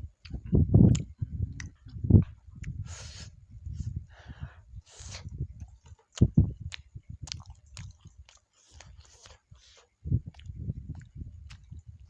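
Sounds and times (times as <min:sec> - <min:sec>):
lip smacks: 0:00.2 - 0:02.9, 0:04.9 - 0:11.8
person chewing food: 0:00.2 - 0:03.2, 0:04.8 - 0:12.0
hissing breaths: 0:02.8 - 0:05.3, 0:08.5 - 0:09.9.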